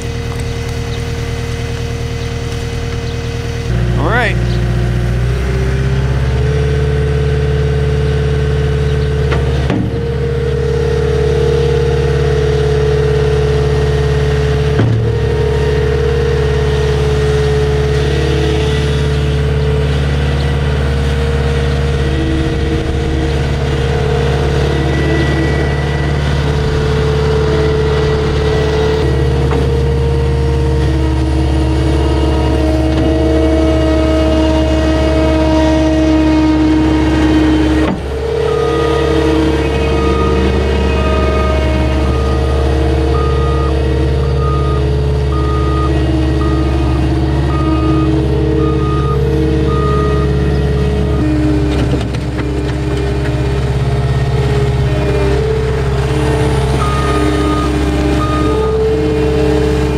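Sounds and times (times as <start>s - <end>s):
diesel engine running: 0.0s - 59.9s
steady whine: 36.3s - 51.4s.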